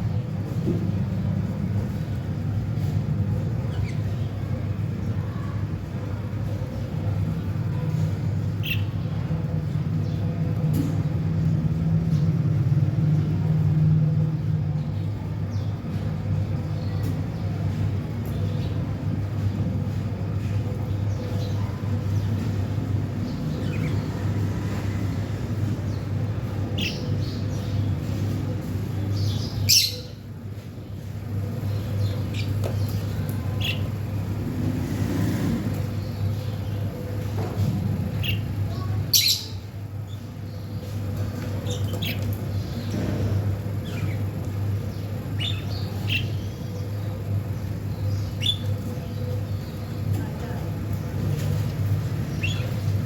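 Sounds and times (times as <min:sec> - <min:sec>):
small birds chirping: 0:00.0 - 0:13.5, 0:14.4 - 0:53.0
steady low hum: 0:00.0 - 0:53.0
budgerigars chirping: 0:29.2 - 0:30.1, 0:48.0 - 0:49.0, 0:52.3 - 0:52.9.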